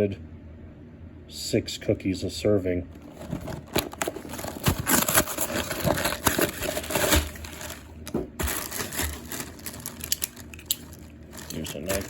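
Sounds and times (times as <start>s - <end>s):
cookie package crinkling: 3.0s - 12.0s.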